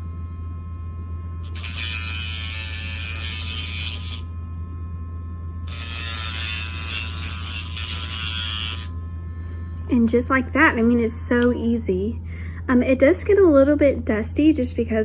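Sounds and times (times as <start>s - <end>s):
nail grinder whining: 1.4s - 4.5s, 5.4s - 11.6s.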